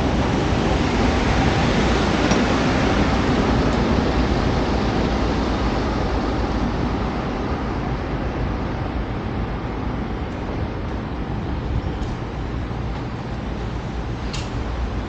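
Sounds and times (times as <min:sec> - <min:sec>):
city traffic: 0:00.0 - 0:15.0
wind buffeting microphone: 0:00.0 - 0:15.0.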